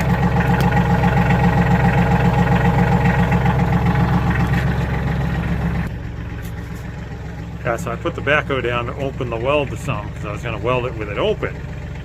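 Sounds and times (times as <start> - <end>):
tractor engine idling: 0.0 - 12.0.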